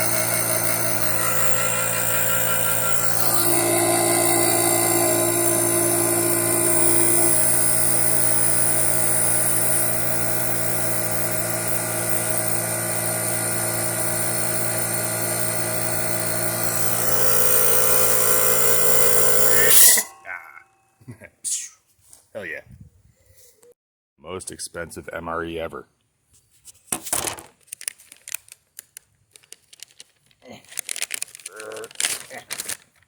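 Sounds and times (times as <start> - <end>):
computer cooling fans whining: 0.0 - 20.2.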